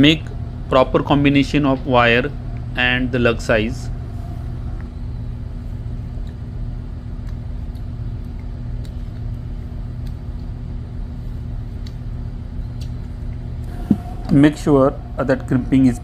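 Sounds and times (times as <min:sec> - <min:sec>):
low machinery hum: 0:00.0 - 0:16.0
faint irregular clicks: 0:07.1 - 0:10.7.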